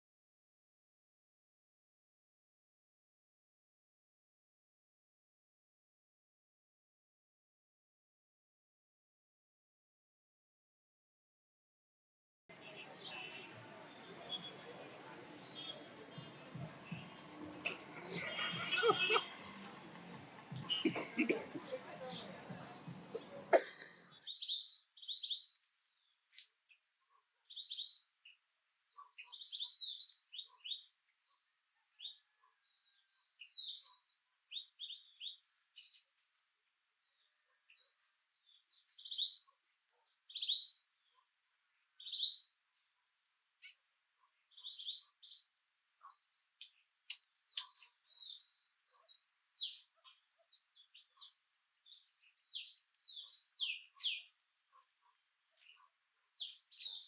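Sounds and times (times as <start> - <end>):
songbirds chirping: 12.5 - 57.0.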